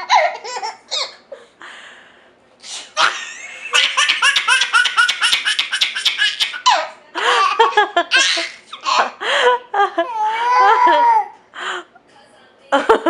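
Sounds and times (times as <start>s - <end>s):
baby laughing: 0.0s - 1.3s, 3.0s - 9.2s, 10.0s - 11.4s.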